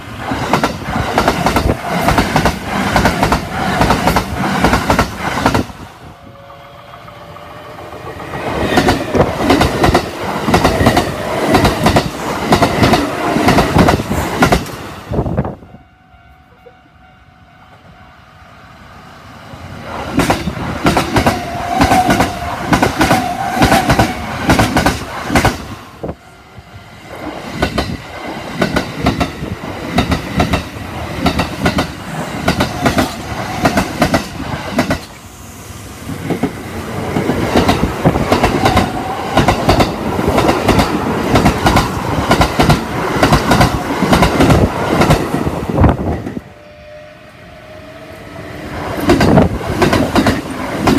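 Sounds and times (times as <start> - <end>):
train wheels clacking over rail joints: 0.3 - 5.7, 6.9 - 14.8, 20.1 - 25.7, 27.6 - 35.2, 36.2 - 45.3, 49.0 - 50.9.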